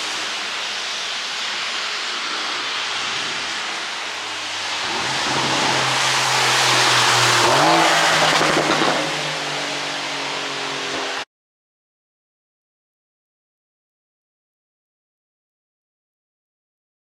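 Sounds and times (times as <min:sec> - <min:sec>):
car engine revving and crackling: 0:00.0 - 0:11.2
rushing noise: 0:00.0 - 0:11.3.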